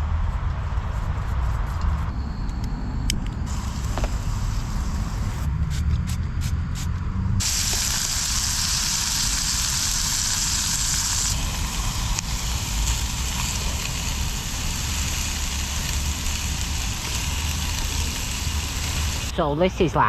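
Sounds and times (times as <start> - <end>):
low traffic rumble: 0.0 - 20.0
food sizzling in a hot pan: 7.4 - 19.3.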